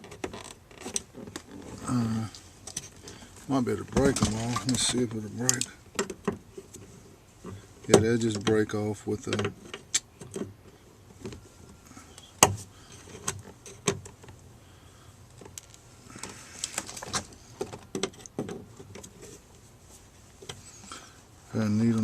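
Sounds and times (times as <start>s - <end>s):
plastic parts rustling: 0.3s - 5.8s, 15.3s - 19.4s.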